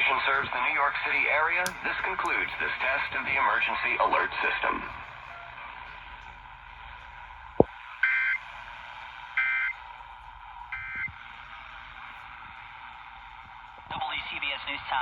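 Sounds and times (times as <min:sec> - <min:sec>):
radio hiss: 0:00.0 - 0:15.0
sharp click: 0:01.6 - 0:03.3.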